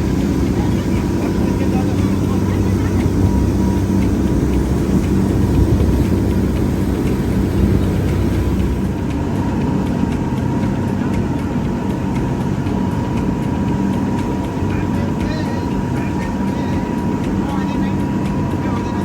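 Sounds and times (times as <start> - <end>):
vehicle engine droning: 0.0 - 19.0.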